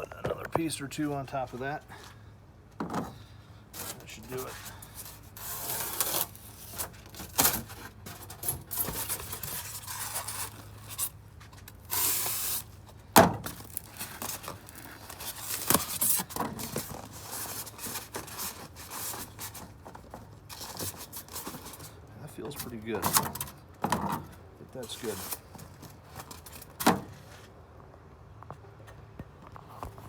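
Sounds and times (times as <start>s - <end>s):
styrofoam pieces scraping: 3.8s - 22.0s.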